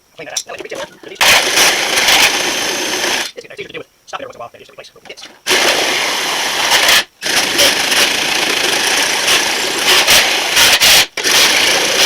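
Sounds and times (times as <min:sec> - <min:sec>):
drill cutting through thin metal: 0:01.2 - 0:03.3, 0:05.5 - 0:12.0.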